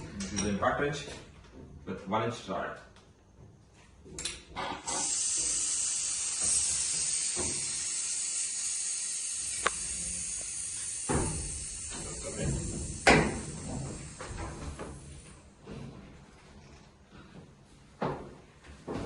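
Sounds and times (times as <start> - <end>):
compressed air hissing: 4.6 - 15.5.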